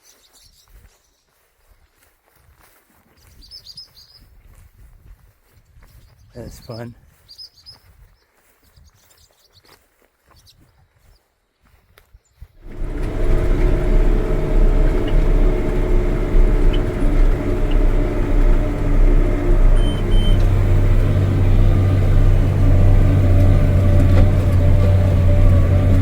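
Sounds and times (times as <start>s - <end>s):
farm machine engine droning: 12.6s - 26.0s
short high beeps: 19.8s - 20.5s.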